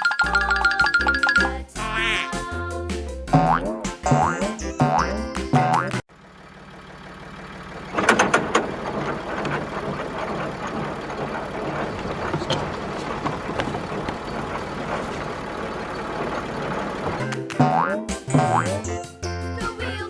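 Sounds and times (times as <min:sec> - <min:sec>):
vehicle engine running: 0:03.4 - 0:18.9.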